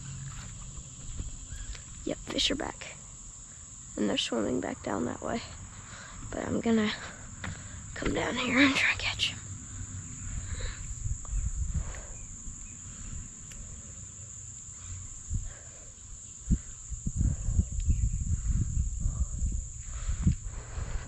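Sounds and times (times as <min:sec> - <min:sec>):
low thumps and rumble: 0:00.0 - 0:02.4
insects droning: 0:00.0 - 0:21.0.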